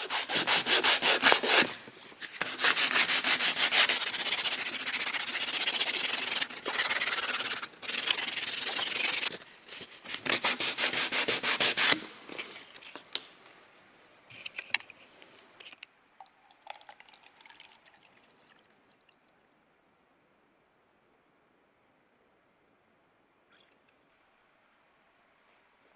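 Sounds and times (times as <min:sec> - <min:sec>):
hand sanding with abrasive paper: 0:00.0 - 0:09.4, 0:10.1 - 0:12.0.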